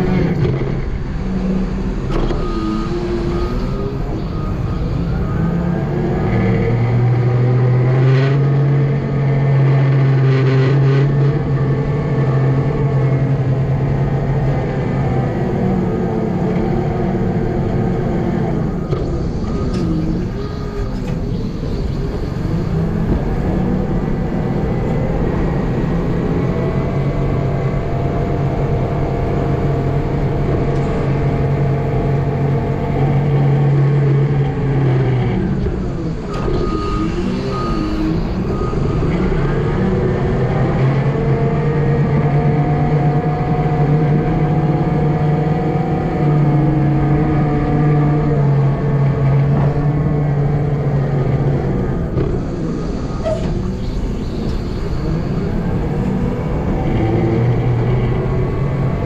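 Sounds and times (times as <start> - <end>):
heavy vehicle engine running: 0.0 - 59.0
high beeping: 2.3 - 6.6, 36.6 - 39.2.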